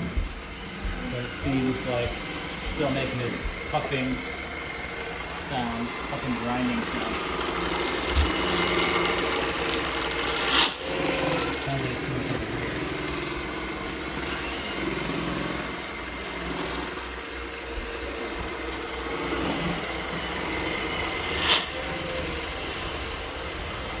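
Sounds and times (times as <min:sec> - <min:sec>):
robot vacuum puffing and grinding: 0:00.0 - 0:17.2.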